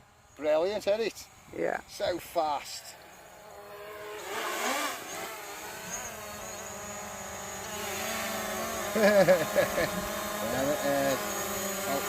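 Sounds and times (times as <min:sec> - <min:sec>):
drone propellers whining: 0:02.9 - 0:12.0.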